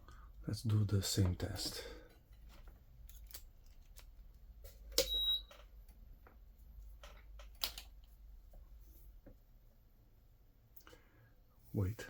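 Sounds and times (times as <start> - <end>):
high beep: 5.0 - 5.5.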